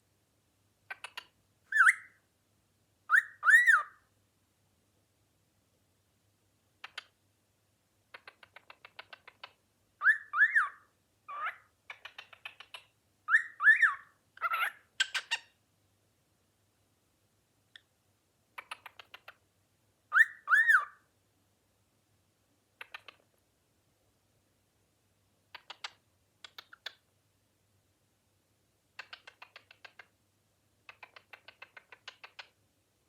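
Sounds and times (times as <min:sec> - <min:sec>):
cockatiel clicking chatter: 0:00.9 - 0:01.3, 0:06.8 - 0:07.1, 0:08.2 - 0:09.6, 0:11.9 - 0:12.9, 0:18.6 - 0:19.4, 0:22.8 - 0:23.3, 0:25.6 - 0:27.0, 0:29.0 - 0:30.1, 0:30.9 - 0:32.6
cockatiel whistling: 0:01.7 - 0:02.2, 0:03.1 - 0:04.0, 0:10.0 - 0:11.6, 0:13.3 - 0:15.4, 0:20.1 - 0:21.0.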